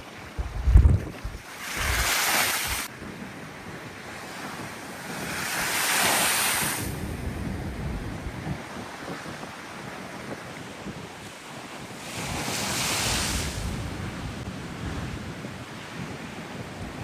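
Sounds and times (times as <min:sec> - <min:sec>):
sea waves breaking: 0:00.0 - 0:09.9, 0:11.8 - 0:14.0
wind buffeting microphone: 0:00.0 - 0:17.0.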